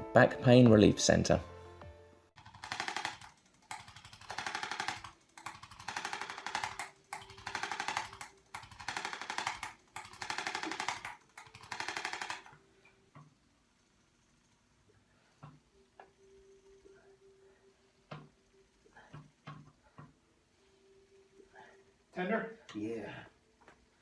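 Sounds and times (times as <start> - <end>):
electric percussion tool rattling: 2.4 - 12.6.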